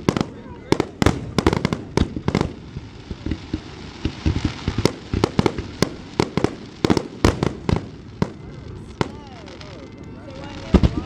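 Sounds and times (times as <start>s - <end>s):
fireworks bangs: 0.0s - 11.0s
fireworks crackle: 0.0s - 11.0s.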